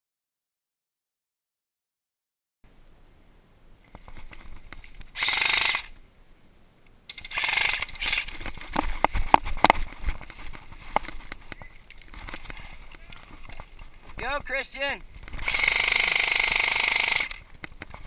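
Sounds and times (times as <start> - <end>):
short rasping bursts: 5.1 - 6.0, 7.1 - 8.3, 14.8 - 17.5.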